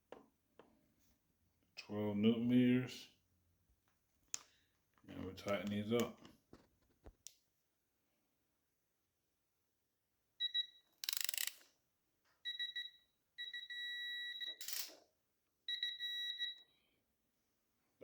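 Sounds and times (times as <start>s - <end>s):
torque wrench beeping: 10.4s - 11.6s, 13.4s - 15.0s.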